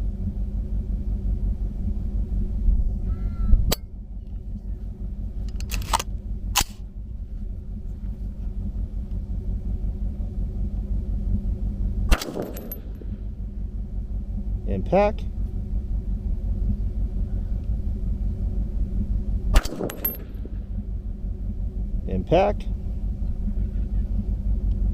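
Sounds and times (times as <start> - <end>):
steady low rumble: 0.0 - 24.9
loud rifle shot: 12.1 - 13.0, 19.5 - 20.4.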